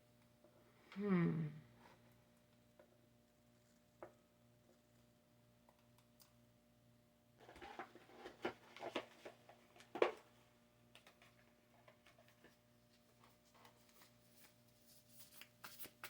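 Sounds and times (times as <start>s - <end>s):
cards shuffling: 13.6s - 16.0s.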